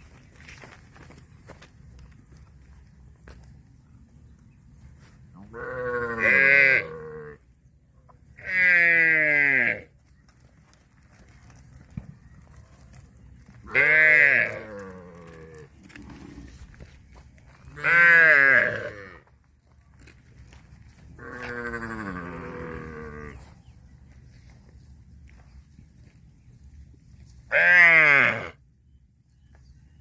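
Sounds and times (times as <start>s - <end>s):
cattle mooing: 21.2s - 23.4s.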